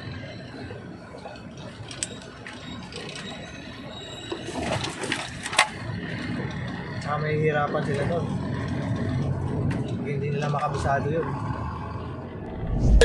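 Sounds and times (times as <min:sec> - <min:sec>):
low steady hum: 0:12.1 - 0:13.0.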